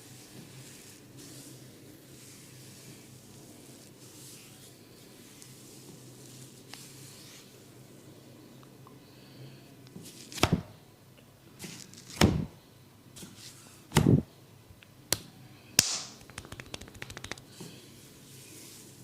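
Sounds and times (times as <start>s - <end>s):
hands slapping a head: 13.9s - 14.2s, 15.1s - 17.5s.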